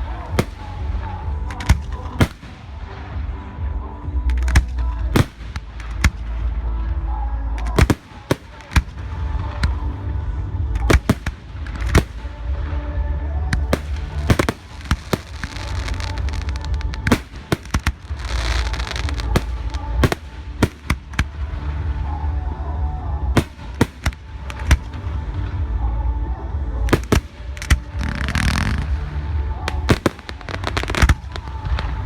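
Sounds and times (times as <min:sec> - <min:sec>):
firework bangs: 0:00.0 - 0:03.5, 0:07.6 - 0:10.0, 0:10.7 - 0:12.8, 0:13.5 - 0:22.2, 0:23.3 - 0:25.4, 0:26.9 - 0:32.0
fireworks crackling: 0:00.0 - 0:25.9, 0:26.6 - 0:32.0.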